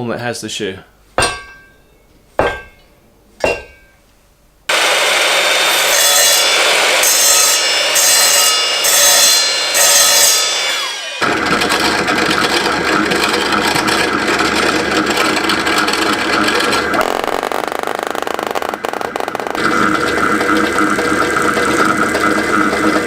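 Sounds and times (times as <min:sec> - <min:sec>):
hatchet blows on metal: 0:01.2 - 0:04.0
power grinder rasping: 0:04.7 - 0:23.0.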